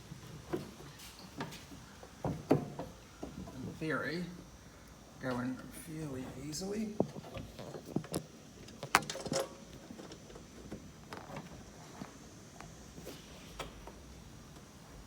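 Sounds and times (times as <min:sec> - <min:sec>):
clicks and knocks of metal parts: 0:07.2 - 0:11.5.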